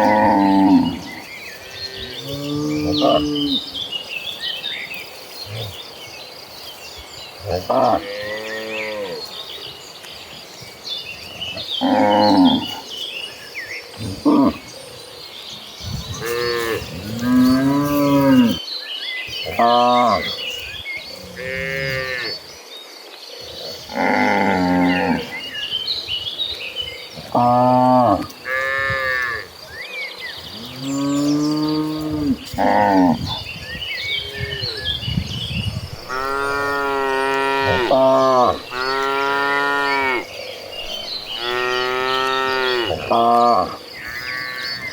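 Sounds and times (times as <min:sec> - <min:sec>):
cattle mooing: 0:36.0 - 0:44.6.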